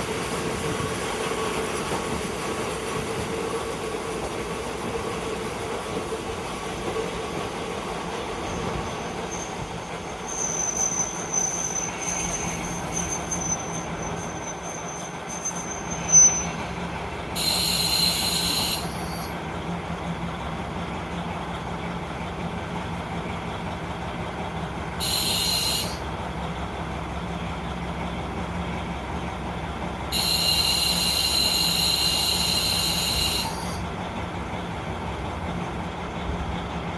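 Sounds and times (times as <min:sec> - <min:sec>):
diesel railcar engine hum: 0:00.0 - 0:36.9
high-pitched wheel squeal: 0:08.5 - 0:16.7, 0:17.4 - 0:19.3, 0:25.0 - 0:26.0, 0:30.1 - 0:33.8
bursts of hissing: 0:17.4 - 0:19.3, 0:25.0 - 0:26.0, 0:30.2 - 0:33.8.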